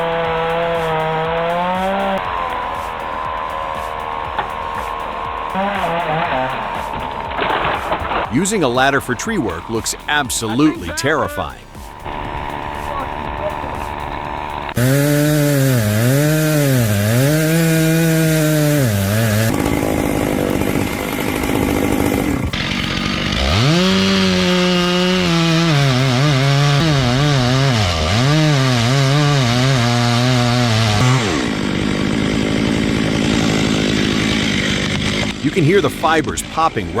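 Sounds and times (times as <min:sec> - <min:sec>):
chainsaw cutting wood: 0:00.0 - 0:37.0.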